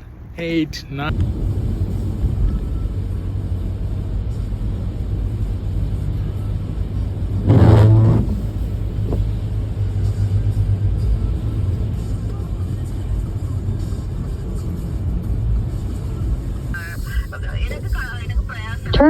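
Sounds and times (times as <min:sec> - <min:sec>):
car driving rumble: 0:00.0 - 0:19.0.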